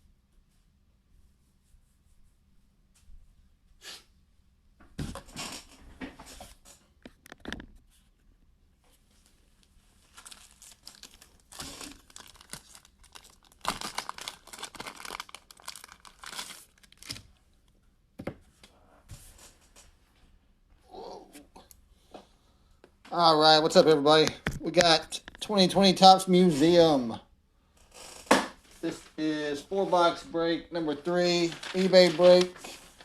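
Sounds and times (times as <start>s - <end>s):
packaging tearing and crinkling: 10.0s - 17.3s, 31.2s - 33.0s.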